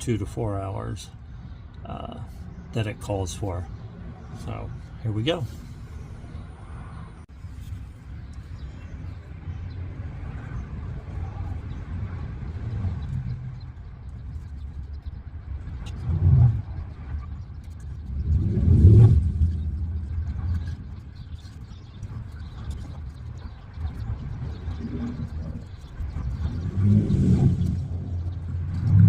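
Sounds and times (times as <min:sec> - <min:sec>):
road traffic rumble: 0:00.0 - 0:29.0
vehicle passing by: 0:15.5 - 0:22.8, 0:23.8 - 0:29.0.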